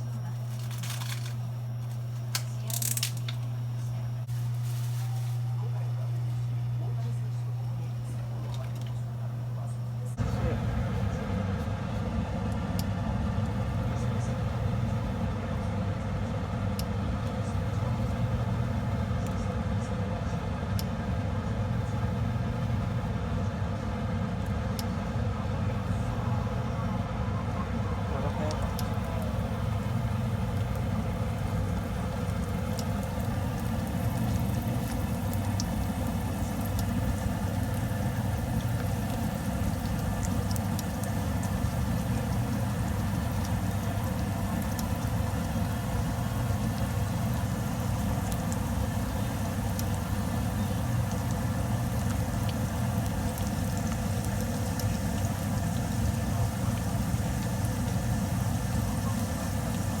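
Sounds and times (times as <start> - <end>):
food deep-frying in oil: 0.0 - 9.6, 28.1 - 60.0.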